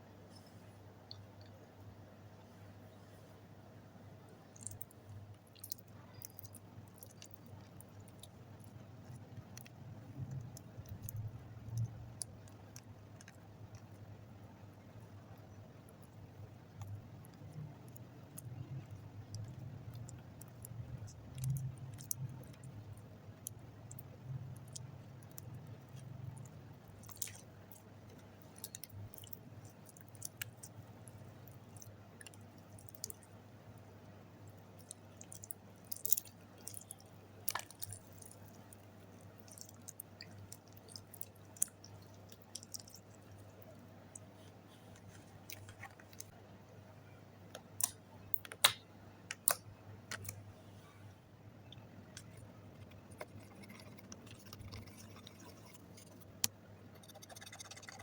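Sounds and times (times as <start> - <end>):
slime sticky clicks and pops: 47.8 - 50.3.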